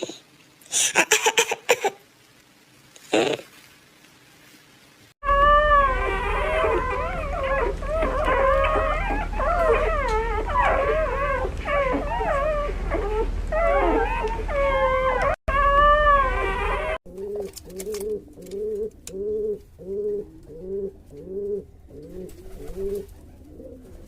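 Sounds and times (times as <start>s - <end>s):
dog howling and whining: 5.2s - 17.0s.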